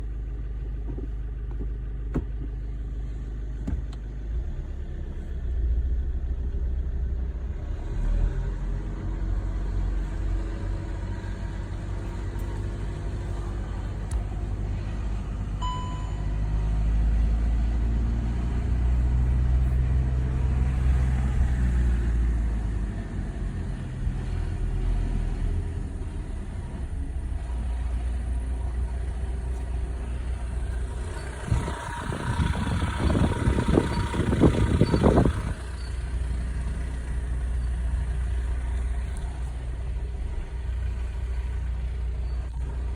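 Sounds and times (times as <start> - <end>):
car engine rumbling: 0.0 - 42.9
brief high beep: 15.6 - 16.4.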